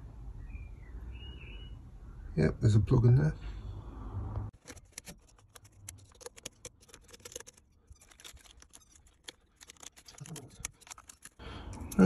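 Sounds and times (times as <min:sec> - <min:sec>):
hand tools clicking and scraping: 0:04.6 - 0:12.0.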